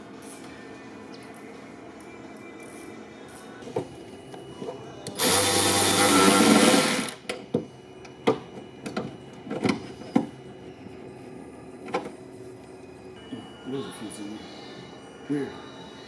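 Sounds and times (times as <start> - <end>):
handheld power tool running: 5.2 - 7.2.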